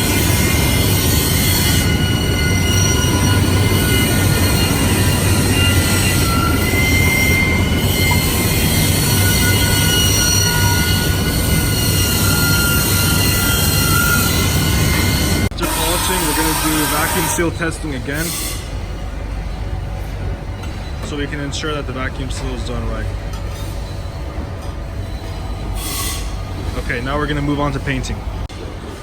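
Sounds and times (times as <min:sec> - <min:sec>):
polishing machines din: 0:00.0 - 0:18.3
high thin squealing tones: 0:00.0 - 0:18.8.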